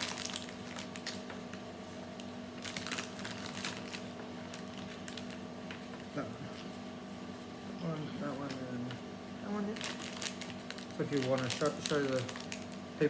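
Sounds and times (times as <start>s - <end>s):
plastic packet crackling: 0.0s - 1.4s, 2.2s - 5.5s, 9.6s - 12.9s
faint steady hum: 0.0s - 13.0s.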